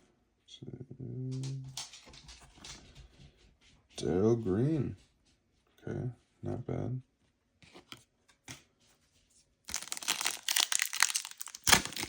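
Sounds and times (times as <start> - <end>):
foil wrapper crinkling and tearing: 9.7 - 12.0.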